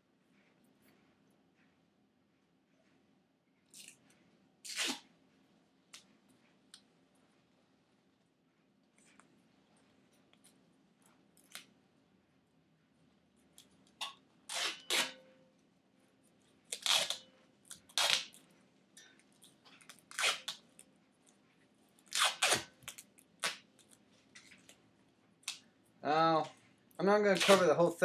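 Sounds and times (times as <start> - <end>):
duct tape ripping off roll: 4.6 - 5.1, 14.5 - 15.2, 16.7 - 18.4, 20.1 - 20.6, 22.1 - 23.6, 27.3 - 27.8.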